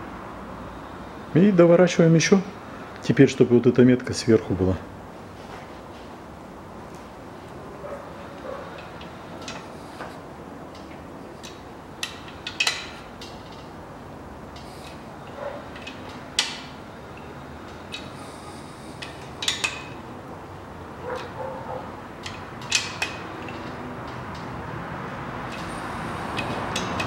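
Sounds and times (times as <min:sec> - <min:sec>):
wrench clinking on metal bolts: 0:10.7 - 0:13.7, 0:14.6 - 0:18.2, 0:19.0 - 0:20.0, 0:22.2 - 0:24.4.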